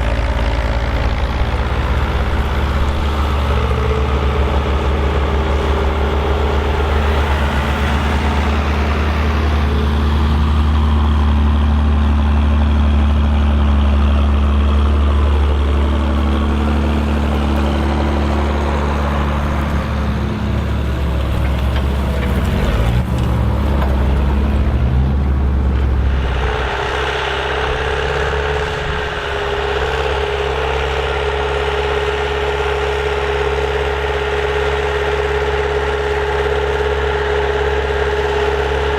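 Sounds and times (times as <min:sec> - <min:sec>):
tractor diesel engine under load: 0:00.0 - 0:38.9.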